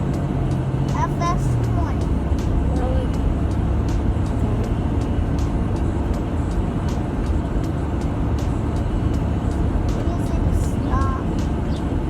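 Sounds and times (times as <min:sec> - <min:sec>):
car engine and road noise: 0:00.0 - 0:12.0.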